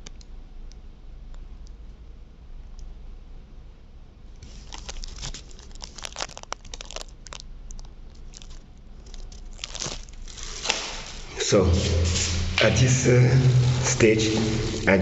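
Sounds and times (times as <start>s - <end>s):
light clicks and crinkling: 4.4s - 11.3s.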